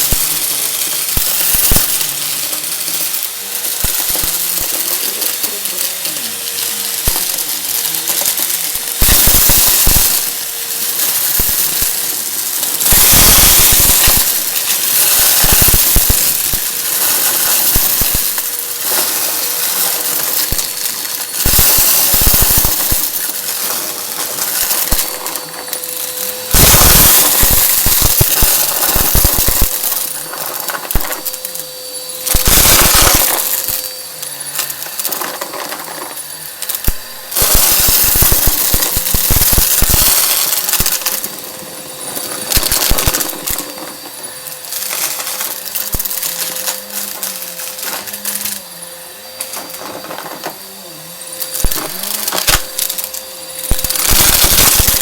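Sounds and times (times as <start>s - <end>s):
debris rattling through vacuum nozzle: 0.0s - 55.0s
vacuum cleaner motor whine: 0.0s - 55.0s.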